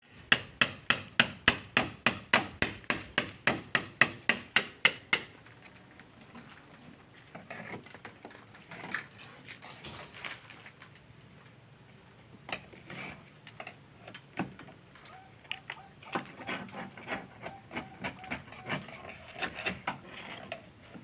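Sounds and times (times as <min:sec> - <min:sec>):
scraping paint: 0:16.1 - 0:21.0.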